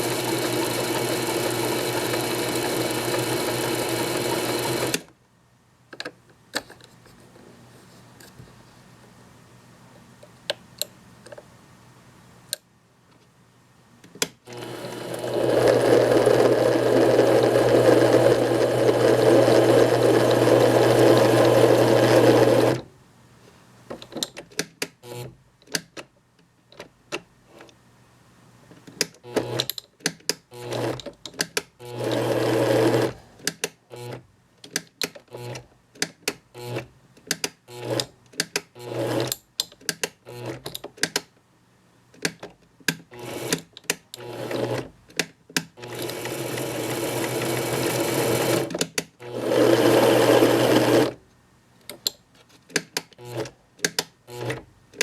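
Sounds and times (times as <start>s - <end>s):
lathe motor humming: 0.0s - 5.0s, 14.6s - 22.8s, 49.3s - 51.1s
small clicks and knocks: 53.8s - 55.0s.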